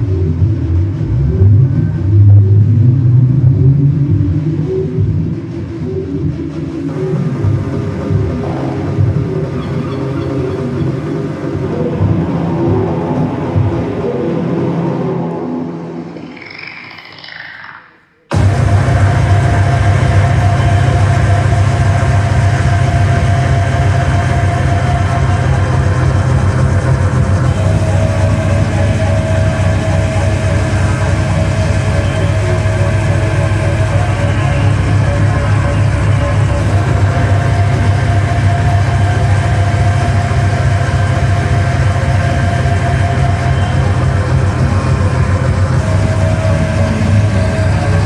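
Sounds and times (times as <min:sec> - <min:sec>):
machine-like electronic drone: 0:00.0 - 0:48.0
held mid-pitched tone: 0:15.6 - 0:18.4.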